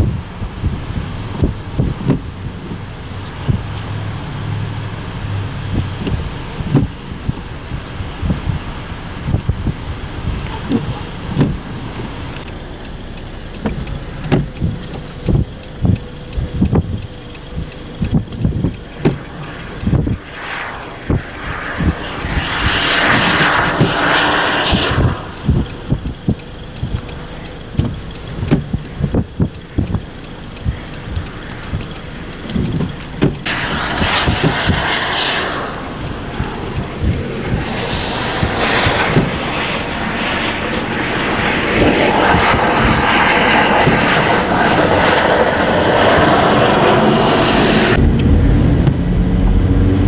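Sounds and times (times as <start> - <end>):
tyre hiss on wet road: 18.1 - 48.0
low thumps: 47.9 - 50.0.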